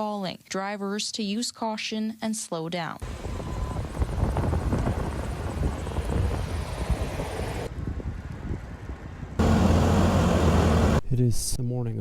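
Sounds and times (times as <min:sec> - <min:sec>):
traffic rumble: 0:03.0 - 0:11.3.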